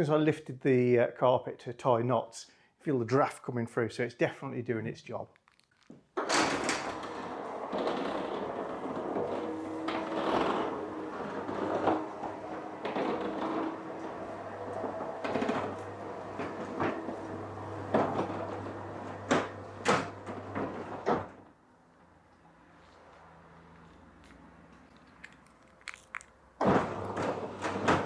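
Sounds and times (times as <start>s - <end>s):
roller shutter door humming and rattling: 6.2s - 25.9s, 26.5s - 28.0s.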